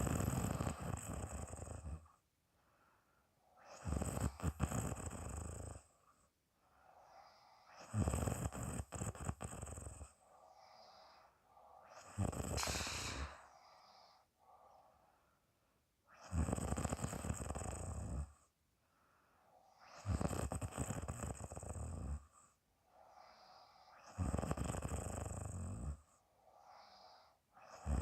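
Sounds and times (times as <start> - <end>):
woman snoring loudly: 0.0 - 1.9, 3.6 - 5.8, 7.6 - 10.0, 11.9 - 14.0, 16.2 - 18.3, 19.9 - 22.2, 23.2 - 26.0, 26.7 - 28.0
soft breathing: 2.1 - 3.8, 5.8 - 15.9, 18.2 - 20.6, 22.2 - 24.6, 25.3 - 28.0.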